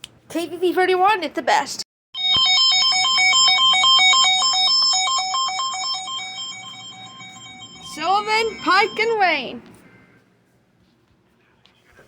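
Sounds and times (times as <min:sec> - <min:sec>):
two-pitch alert beeps: 0:02.2 - 0:09.6.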